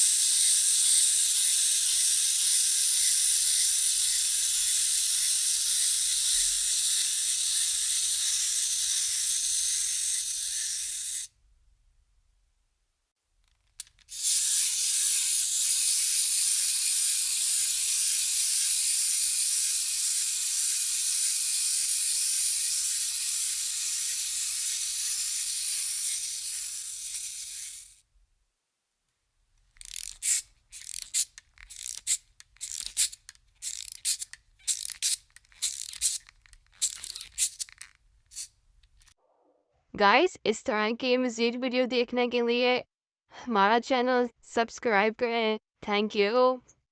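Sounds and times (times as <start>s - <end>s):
aerosol spray can hissing: 14.0s - 28.0s, 29.8s - 38.5s.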